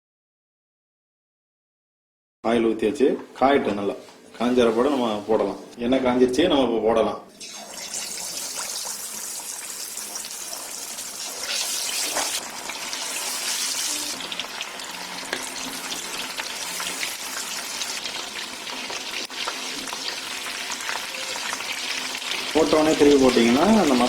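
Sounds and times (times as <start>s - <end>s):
chicken sizzling in hot oil: 7.4s - 24.0s.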